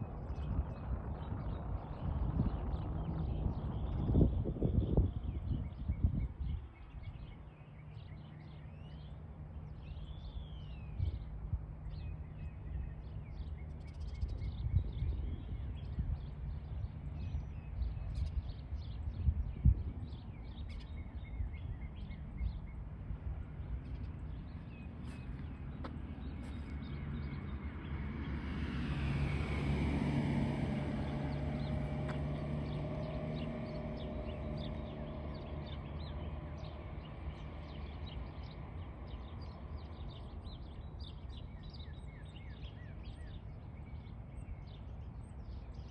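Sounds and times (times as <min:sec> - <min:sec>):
low outdoor rumble: 0:00.0 - 0:07.4, 0:08.0 - 0:45.9
vehicle passing: 0:23.4 - 0:40.4.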